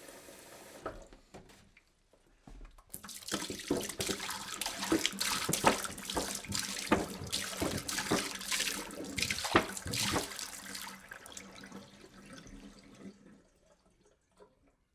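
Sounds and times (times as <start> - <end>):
water pouring from a jug: 2.9 - 14.5.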